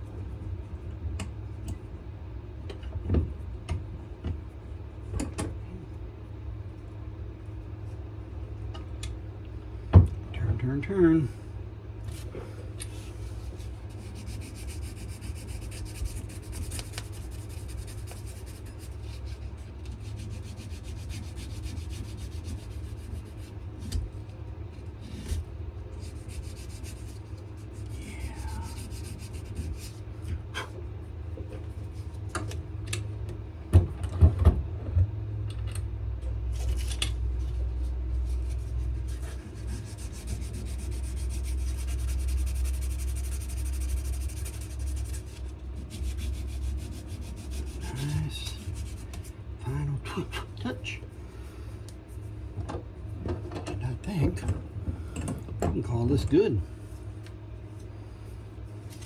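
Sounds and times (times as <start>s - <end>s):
steady low hum: 0.0s - 59.0s
sandpaper rubbing on wood: 13.0s - 23.6s, 26.0s - 30.0s, 38.2s - 49.3s.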